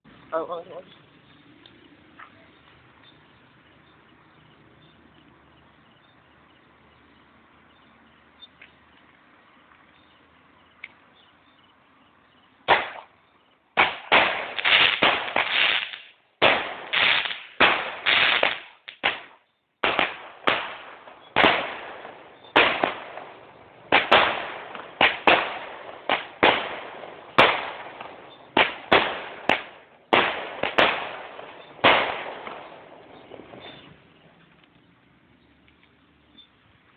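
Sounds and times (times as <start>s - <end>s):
fireworks bangs echoing: 12.6s - 13.2s, 13.8s - 34.3s.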